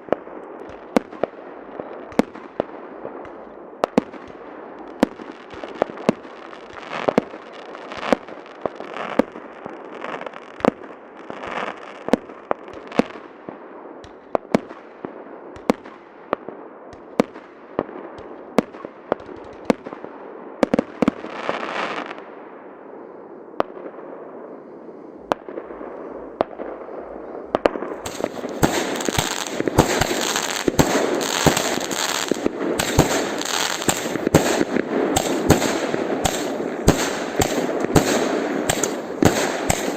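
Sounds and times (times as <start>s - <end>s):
fireworks bangs: 24.9s - 39.9s
fireworks crackling hiss: 25.0s - 39.9s.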